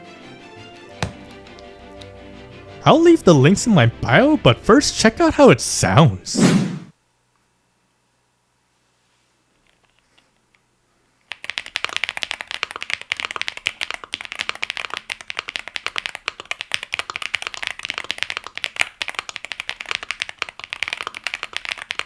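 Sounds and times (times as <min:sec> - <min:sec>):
fast mechanical keyboard typing: 0:11.3 - 0:22.0.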